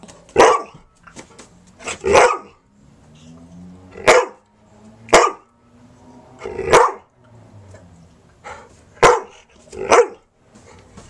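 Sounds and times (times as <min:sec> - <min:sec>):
dog barking: 0:00.4 - 0:00.8, 0:02.0 - 0:02.6, 0:04.0 - 0:04.4, 0:05.1 - 0:05.5, 0:06.6 - 0:07.1, 0:09.0 - 0:10.3.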